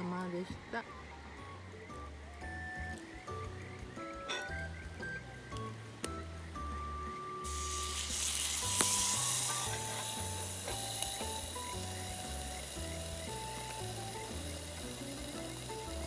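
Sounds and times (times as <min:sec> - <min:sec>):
soft background music: 0:00.0 - 0:16.0
food sizzling in a pan: 0:07.4 - 0:16.0.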